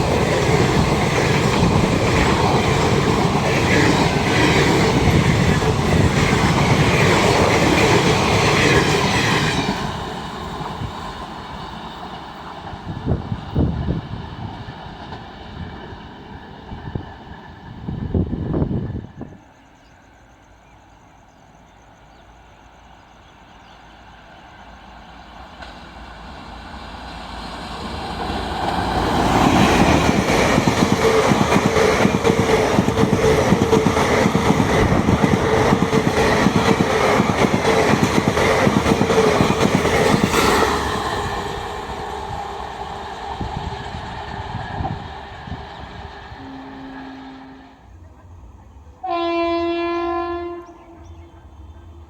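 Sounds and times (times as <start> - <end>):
train whine: 0.0 - 52.0
train wheels clattering: 27.8 - 44.2.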